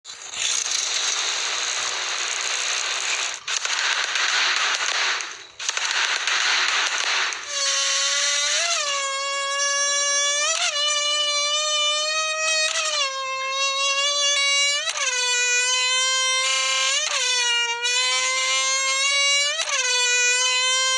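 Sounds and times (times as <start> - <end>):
dense crackling hiss: 0.1 - 15.0.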